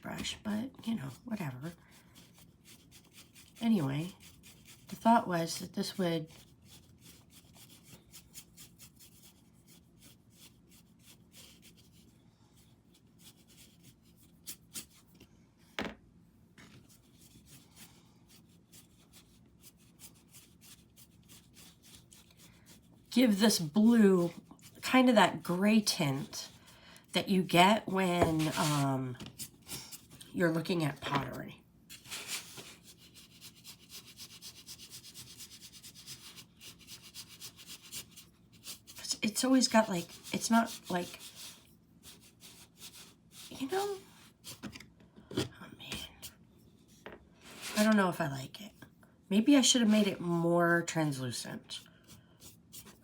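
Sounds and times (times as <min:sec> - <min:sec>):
paintbrush rubbing on a surface: 0:02.0 - 0:05.1, 0:05.9 - 0:15.1, 0:16.8 - 0:25.6, 0:28.1 - 0:30.1, 0:31.9 - 0:44.5, 0:46.8 - 0:48.0
paintbrush swishing: 0:28.2 - 0:29.0.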